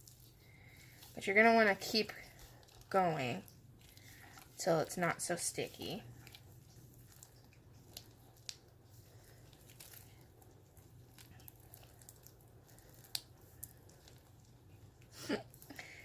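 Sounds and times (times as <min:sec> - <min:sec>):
slime squishing and popping: 0:06.1 - 0:15.1.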